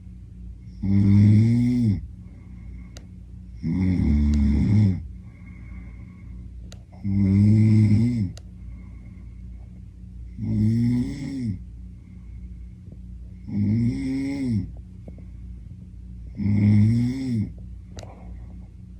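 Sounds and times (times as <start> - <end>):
person snoring loudly: 0.7 - 2.0, 3.6 - 5.0, 7.0 - 8.4, 10.3 - 11.6, 13.4 - 14.7, 16.3 - 17.6.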